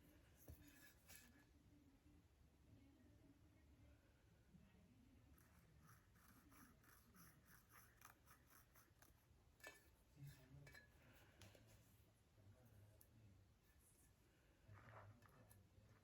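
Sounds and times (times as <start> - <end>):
painting tool scratching tile: 5.3 - 10.9.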